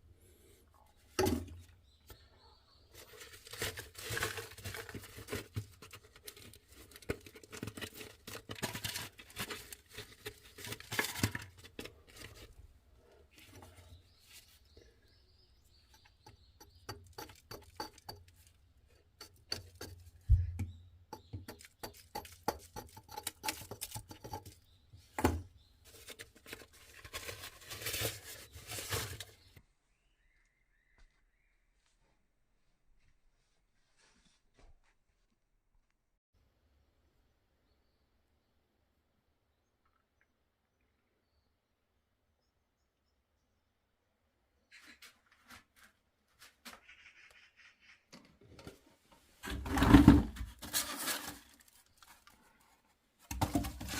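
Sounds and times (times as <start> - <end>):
rustling and crinkling: 0.8 - 15.0, 21.3 - 29.6, 48.2 - 53.9.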